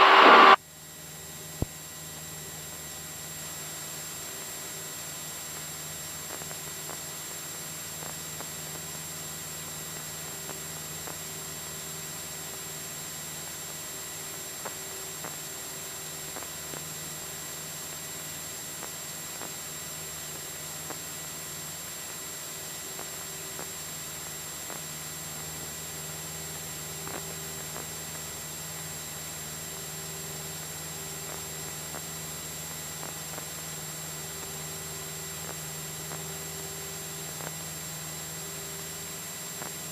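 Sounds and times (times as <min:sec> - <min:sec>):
cockpit hiss: 0:00.0 - 0:00.6.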